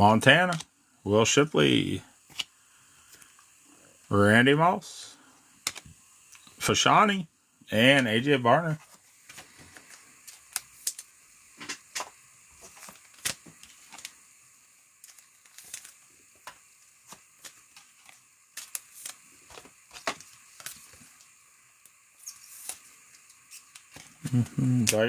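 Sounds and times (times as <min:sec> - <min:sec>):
cards and sleeves clicking and rustling: 0:08.8 - 0:14.2, 0:15.0 - 0:21.3, 0:22.2 - 0:25.0.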